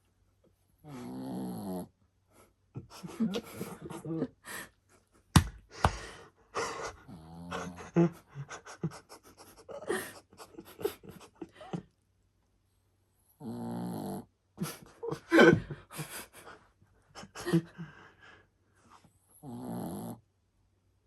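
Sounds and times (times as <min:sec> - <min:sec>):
dog snoring: 0:00.8 - 0:01.9, 0:13.3 - 0:14.3, 0:19.3 - 0:20.2.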